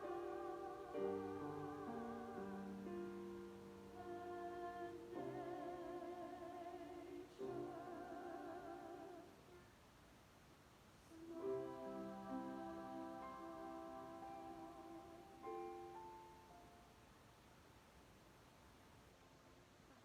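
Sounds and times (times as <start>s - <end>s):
choir singing sustained chords: 0.0s - 9.6s, 11.1s - 16.6s.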